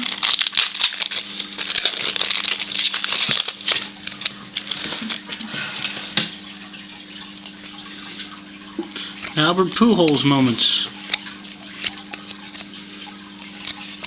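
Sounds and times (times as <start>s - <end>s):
trading cards and packs rustling: 0.0s - 5.5s.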